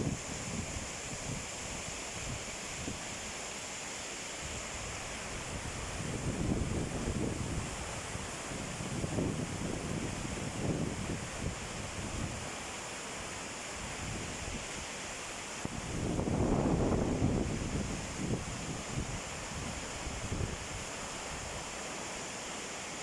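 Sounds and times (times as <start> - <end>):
water rushing over waterfall: 0.0 - 23.0
wind buffeting microphone: 15.8 - 20.6.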